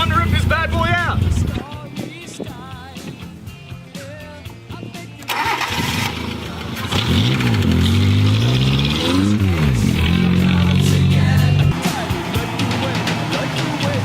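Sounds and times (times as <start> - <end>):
car engine revving: 0.0 - 1.6, 5.3 - 14.0.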